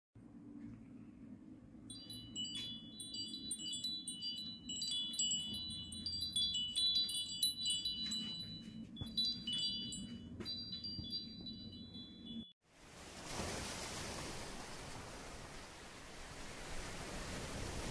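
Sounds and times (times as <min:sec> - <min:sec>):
chimes tinkling: 0:01.9 - 0:12.6.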